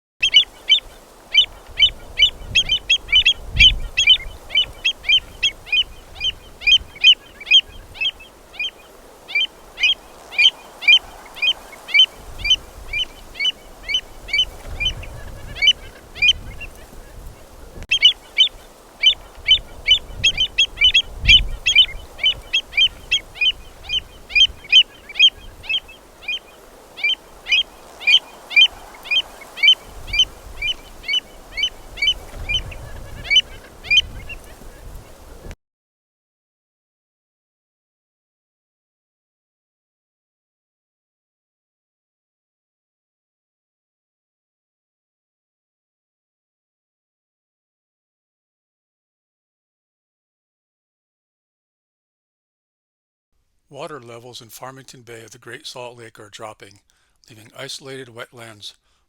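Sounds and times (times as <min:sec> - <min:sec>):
gulls calling: 0:00.2 - 0:35.6
wind rumble on microphone: 0:00.2 - 0:35.6.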